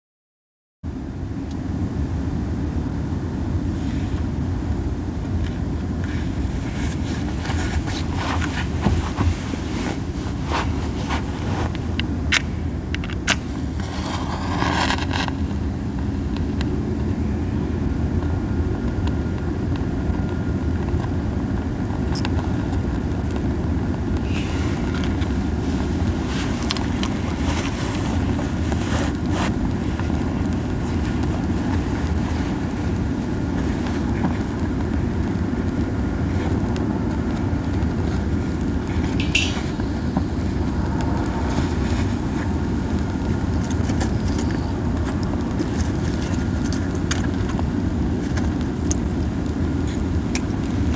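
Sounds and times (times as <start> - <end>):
campfire flames rumbling: 1.0 - 50.9
fire crackles and pops: 3.6 - 17.2, 17.8 - 50.9.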